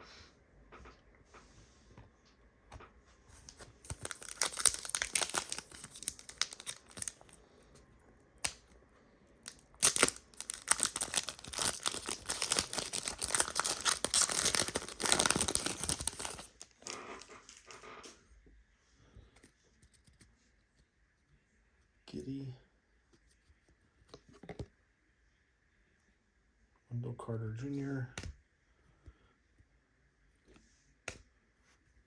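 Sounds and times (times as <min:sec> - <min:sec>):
foil wrapper tearing and crinkling: 0:03.5 - 0:07.4, 0:08.4 - 0:08.6, 0:09.5 - 0:17.0.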